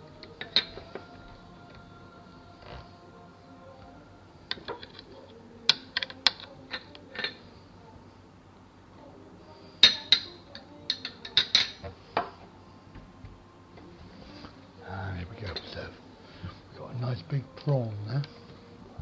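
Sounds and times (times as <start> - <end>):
cutlery clinking against a plate: 9.8 - 12.4.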